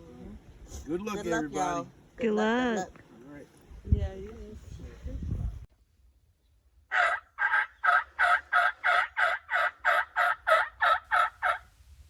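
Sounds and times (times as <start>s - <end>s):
turkey yelps: 6.9s - 11.7s.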